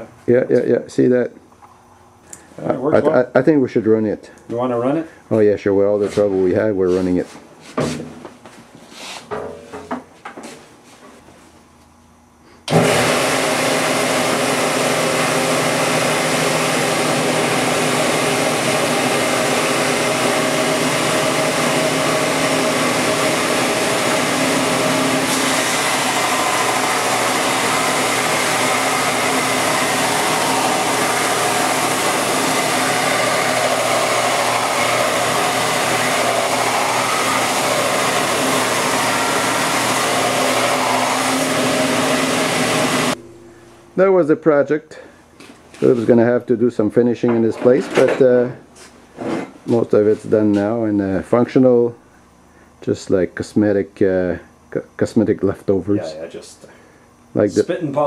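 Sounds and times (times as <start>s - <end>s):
belt sander running: 12.7s - 44.3s.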